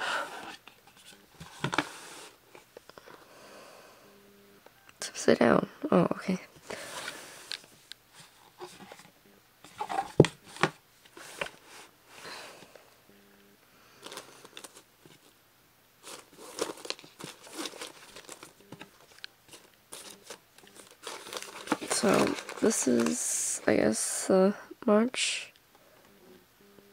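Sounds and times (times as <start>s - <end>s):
paper rustling and crinkling: 0.4s - 2.4s, 6.8s - 11.9s, 14.0s - 15.3s, 16.0s - 23.8s.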